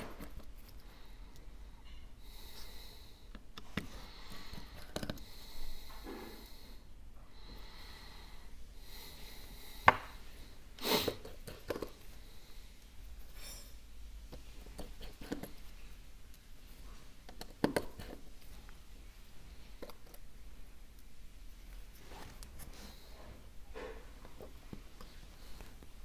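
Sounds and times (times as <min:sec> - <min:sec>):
person breathing through nose: 0:00.8 - 0:03.3, 0:03.9 - 0:11.4
hand tools clicking and tapping: 0:03.3 - 0:05.2, 0:17.2 - 0:18.2.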